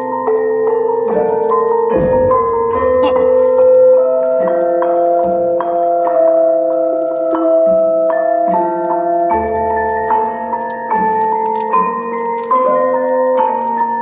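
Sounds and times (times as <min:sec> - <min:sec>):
soft ringing instrumental chords: 0:00.0 - 0:09.2.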